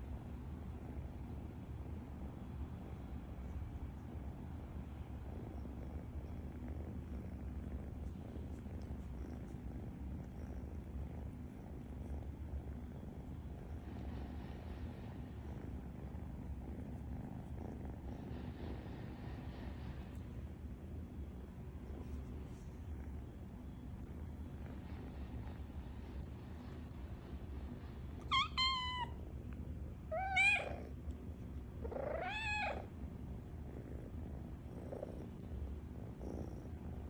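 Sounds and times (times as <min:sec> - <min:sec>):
cat snoring: 0:05.2 - 0:20.0, 0:33.6 - 0:37.0.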